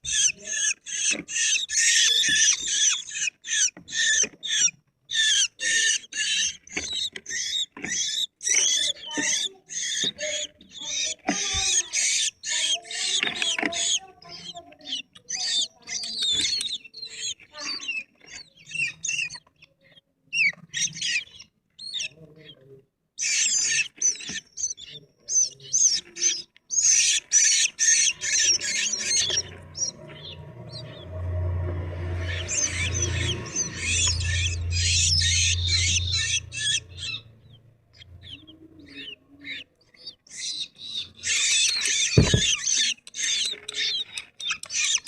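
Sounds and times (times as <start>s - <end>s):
low hum: 29.0s - 38.5s
shrike chattering song: 32.0s - 45.0s.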